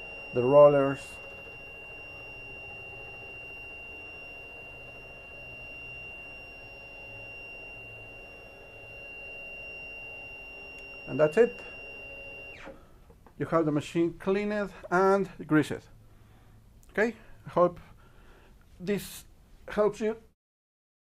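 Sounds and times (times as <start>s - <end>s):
high-pitched electrical whine: 0.0s - 15.9s
faint low hum: 0.0s - 20.3s.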